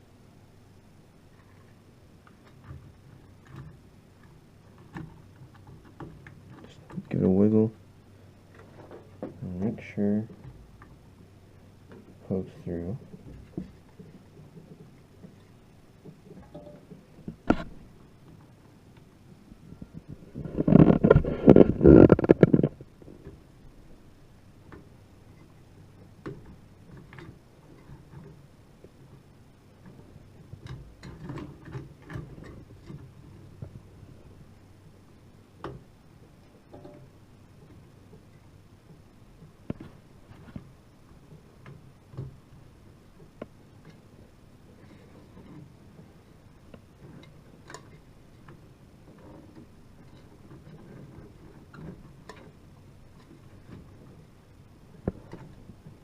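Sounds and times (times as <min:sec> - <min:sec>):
small clicks and knocks: 0:01.3 - 0:07.2, 0:19.8 - 0:23.5, 0:24.6 - 0:34.4, 0:35.6 - 0:56.0.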